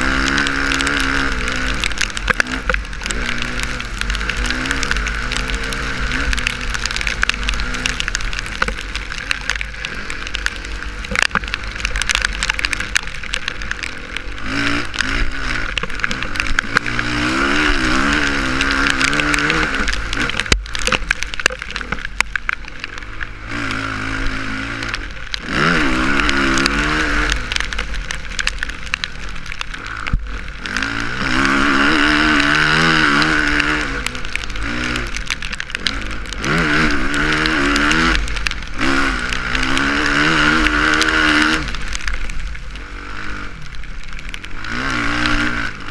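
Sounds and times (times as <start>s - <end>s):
motocross bike engine revving: 0.0s - 22.1s, 22.9s - 45.9s.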